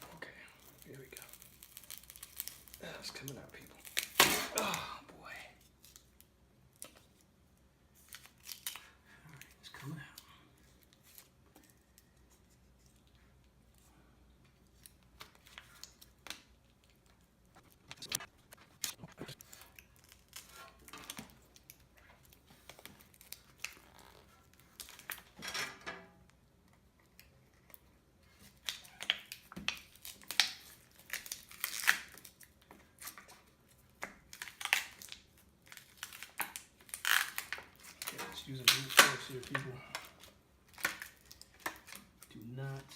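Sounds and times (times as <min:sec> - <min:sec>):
battery adhesive crackling and tearing: 0:00.8 - 0:04.4, 0:34.3 - 0:39.4.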